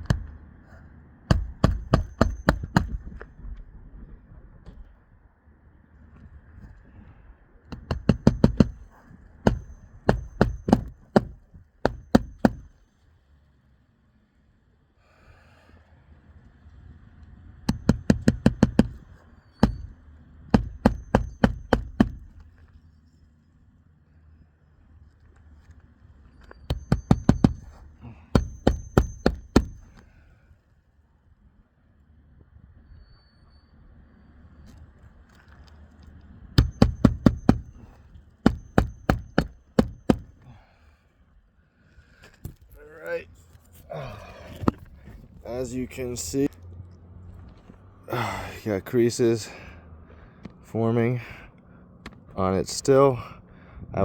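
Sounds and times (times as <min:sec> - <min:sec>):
hand hammer blows: 0:07.7 - 0:12.8, 0:17.7 - 0:19.0, 0:19.6 - 0:22.3, 0:26.7 - 0:30.0, 0:36.6 - 0:40.6.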